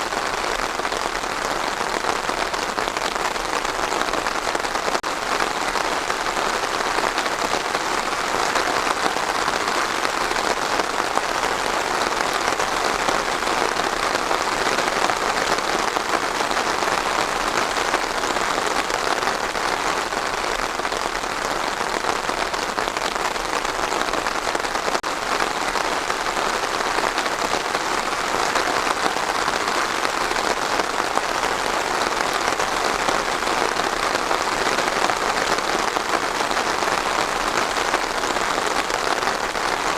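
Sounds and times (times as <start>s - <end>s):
rain on a hard surface: 0.0s - 39.9s.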